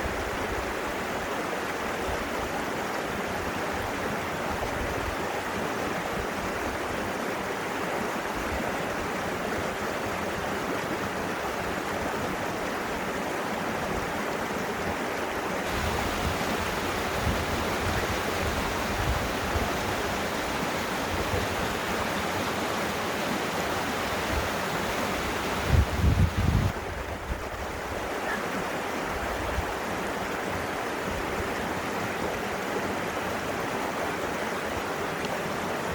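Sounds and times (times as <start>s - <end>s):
rushing water hiss: 15.5s - 30.3s.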